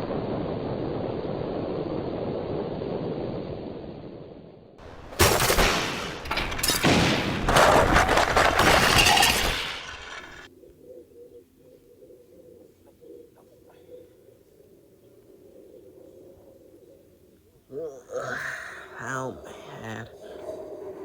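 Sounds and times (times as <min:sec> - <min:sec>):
explosion blasts: 0:04.9 - 0:09.8.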